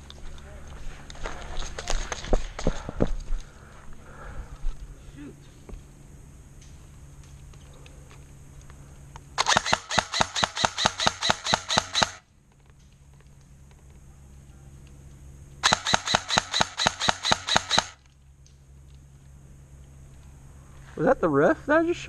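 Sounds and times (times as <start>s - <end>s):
airsoft gun rapid fire: 9.4s - 12.2s, 15.6s - 18.0s.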